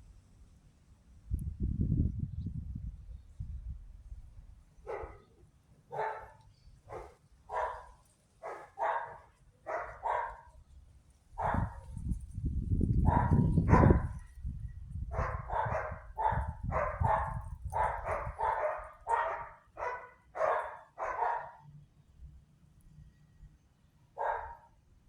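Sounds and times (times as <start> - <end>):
wind rumble on microphone: 1.2 - 5.2, 9.7 - 20.6
dog barking: 4.9 - 10.5, 11.4 - 11.9, 13.0 - 14.2, 15.1 - 21.6, 24.2 - 24.8.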